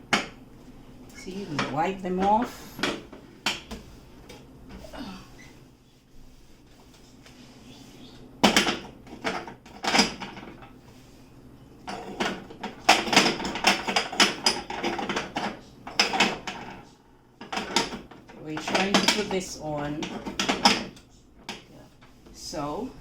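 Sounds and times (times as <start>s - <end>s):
stove parts clattering and knocking: 8.4s - 10.8s, 11.9s - 16.8s, 17.4s - 21.7s.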